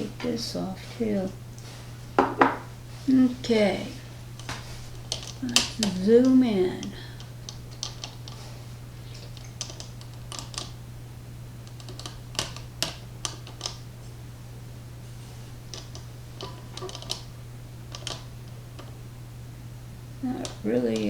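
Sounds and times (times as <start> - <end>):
small lock parts clicking: 5.0 - 8.4, 9.1 - 10.8, 11.6 - 13.8, 15.7 - 17.3, 17.9 - 19.0.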